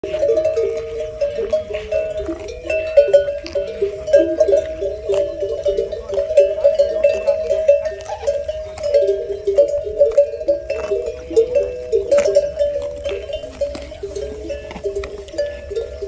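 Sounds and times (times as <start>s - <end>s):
camel bells clanking: 0.0s - 16.0s.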